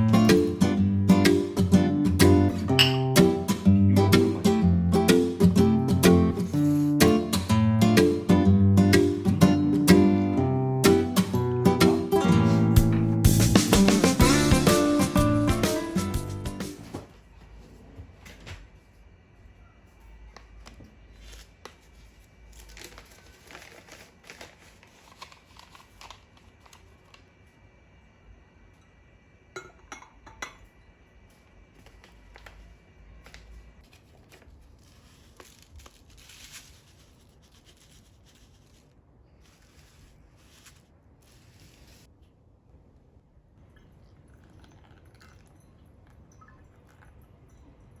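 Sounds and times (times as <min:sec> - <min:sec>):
dishes and utensils clicking: 0:02.8 - 0:03.3
packaging rustling: 0:21.0 - 0:27.2.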